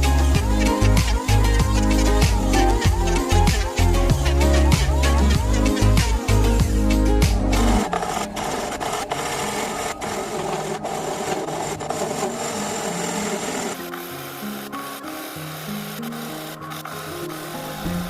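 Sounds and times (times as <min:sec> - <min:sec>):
background music: 0:00.0 - 0:18.0
hand sanding wood: 0:00.2 - 0:14.2.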